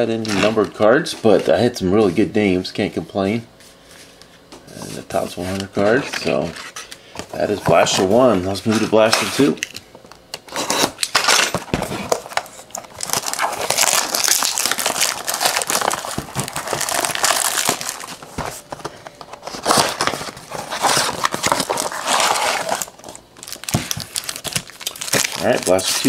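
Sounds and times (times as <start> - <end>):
plastic wrapping crinkling: 11.9 - 26.0.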